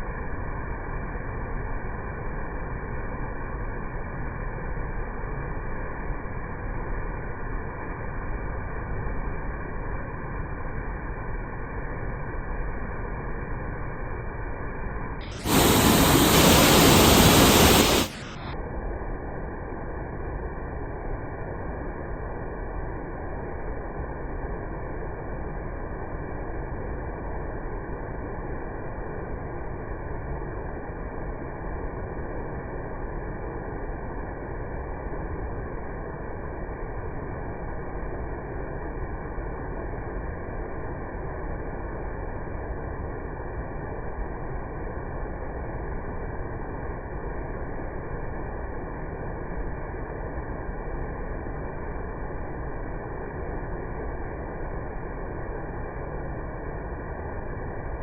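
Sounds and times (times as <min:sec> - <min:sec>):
loud bright water rush: 0:15.2 - 0:18.5
muffled waterfall rushing: 0:15.3 - 0:18.8.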